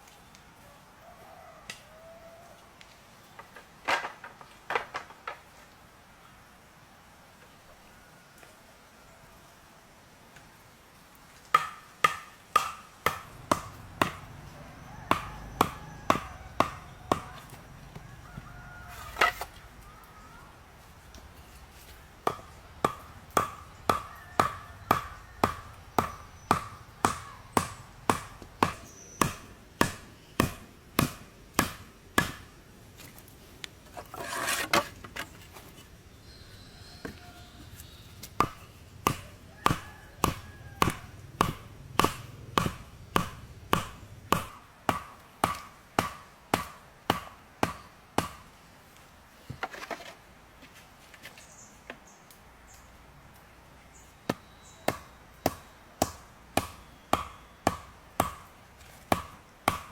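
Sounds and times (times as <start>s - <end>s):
chopping wood: 11.5s - 14.3s, 15.1s - 17.6s, 22.2s - 32.5s, 38.3s - 48.4s, 54.3s - 59.9s
rustling: 17.3s - 22.7s, 32.8s - 39.6s.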